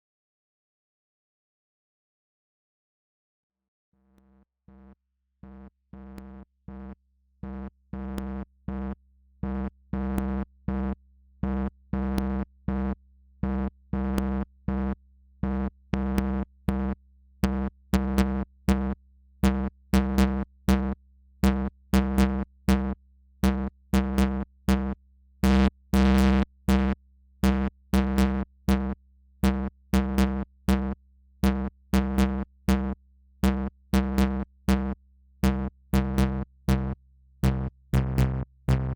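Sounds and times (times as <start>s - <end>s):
clicky gated synth notes: 36.2s - 38.9s
steady low synth drone: 36.2s - 38.9s.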